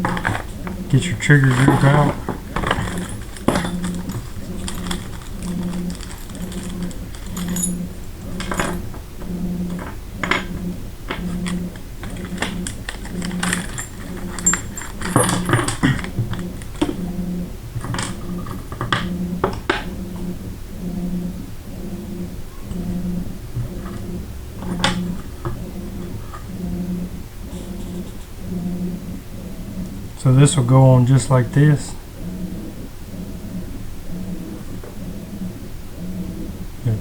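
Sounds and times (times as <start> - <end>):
small metal parts clinking: 0.0 - 9.0, 11.1 - 17.0
low pulsing hum: 0.0 - 37.0.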